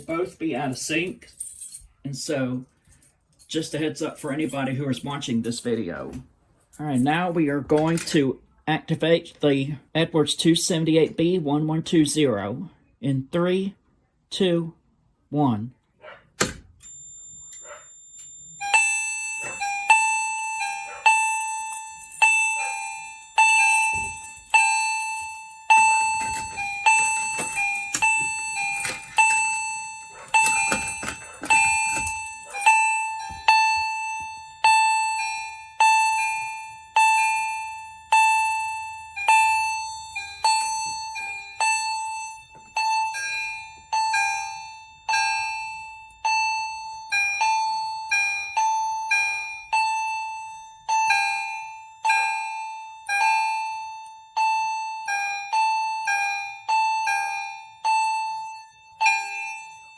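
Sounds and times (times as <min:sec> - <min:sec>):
fire alarm chimes: 0:16.8 - 0:59.9.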